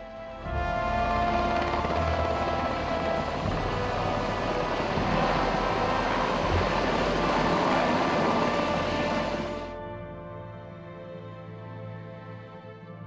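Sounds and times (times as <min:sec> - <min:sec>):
faint music: 0:00.0 - 0:13.0
helicopter rotor and engine: 0:00.2 - 0:09.7.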